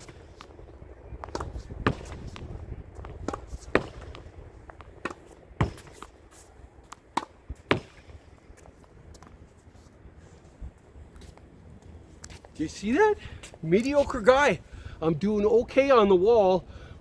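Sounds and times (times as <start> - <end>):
ball hitting wall and bouncing: 1.2 - 6.1, 7.1 - 8.2
racket hitting tennis ball: 1.2 - 8.3.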